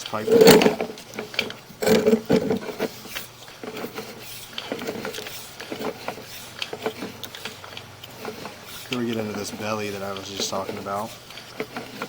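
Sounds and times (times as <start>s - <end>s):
cable clicks and knocks: 0.0s - 3.0s.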